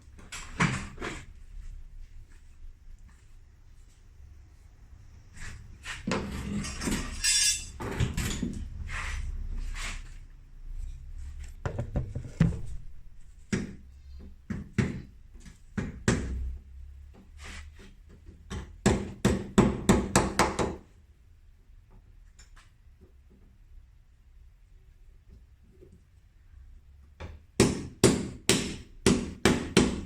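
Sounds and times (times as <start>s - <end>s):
hammer knocking: 11.6s - 12.6s.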